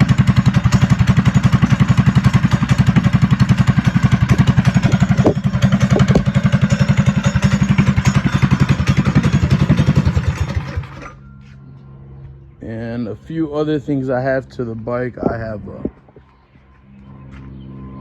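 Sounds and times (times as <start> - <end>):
mini bike engine idling: 0.0 - 11.2.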